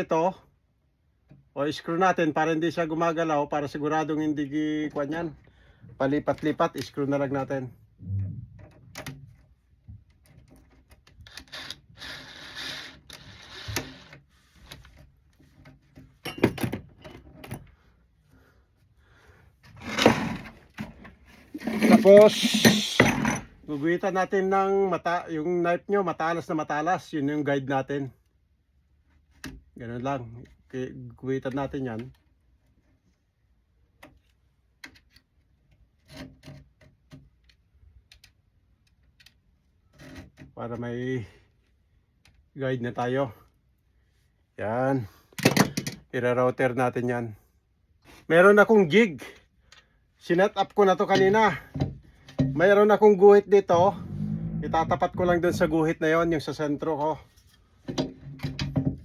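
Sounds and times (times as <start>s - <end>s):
knife scraping wood: 21.4s - 23.4s.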